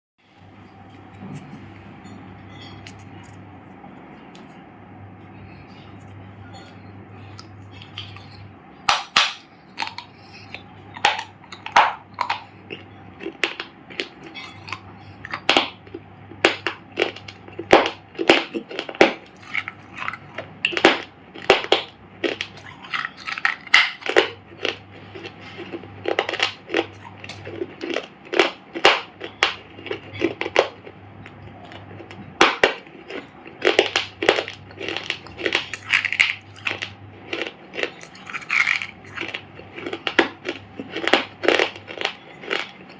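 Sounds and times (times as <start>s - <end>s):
dried clay crunching: 31.6s - 42.9s.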